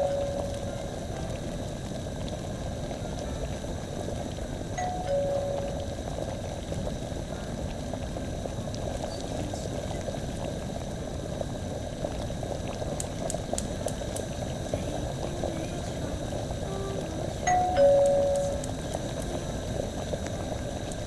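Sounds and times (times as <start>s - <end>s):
bubbling with crackles: 0.0s - 21.0s
sharp high ticks: 13.0s - 14.3s, 17.5s - 19.4s.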